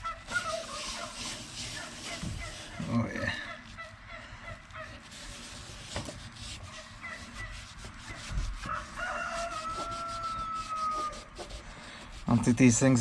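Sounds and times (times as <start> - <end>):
light rubbing and clicking: 0.2 - 3.8, 4.7 - 13.0
rooster crowing: 8.6 - 11.3.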